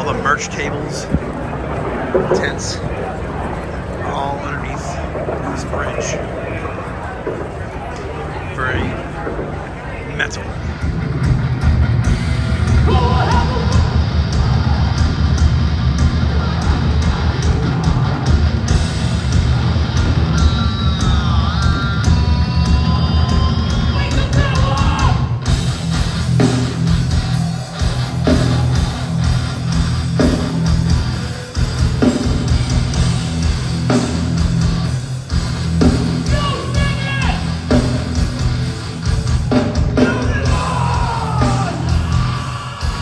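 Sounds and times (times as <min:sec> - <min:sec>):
heavy metal music: 0:10.2 - 0:43.0
person yelling vocals: 0:40.0 - 0:42.8.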